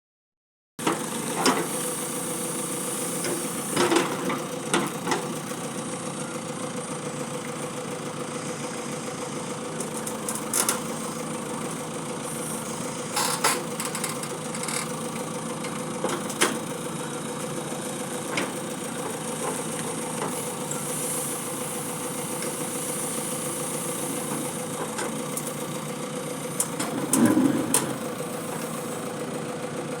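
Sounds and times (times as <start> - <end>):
tractor engine running: 0.8 - 30.0.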